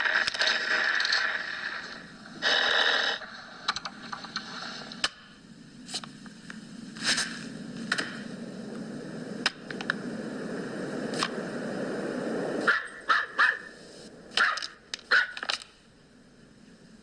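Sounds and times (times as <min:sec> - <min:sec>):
steady low noise: 0:00.0 - 0:17.0
dog barking: 0:12.7 - 0:13.7, 0:14.4 - 0:15.4.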